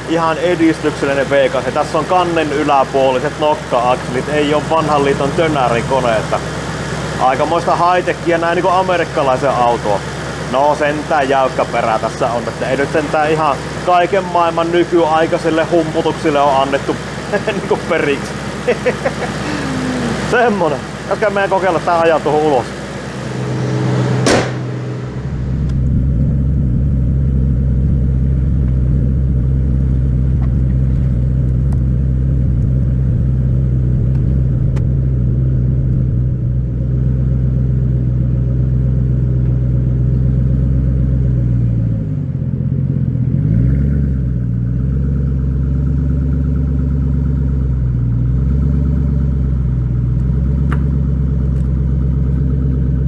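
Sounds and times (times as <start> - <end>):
car engine rumbling: 0.0 - 53.0
sharp engine knock: 24.2 - 25.8.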